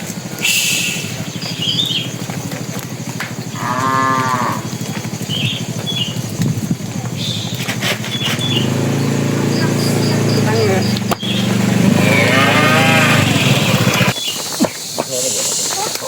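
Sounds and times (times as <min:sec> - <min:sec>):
cow mooing: 0:03.5 - 0:04.9, 0:11.5 - 0:14.0.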